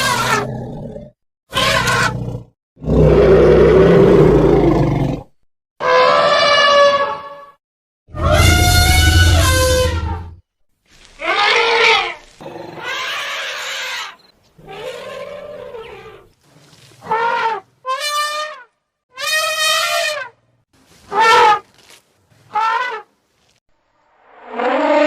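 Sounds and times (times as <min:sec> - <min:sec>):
loud brassy animal calls: 0:01.5 - 0:02.2, 0:08.2 - 0:10.2.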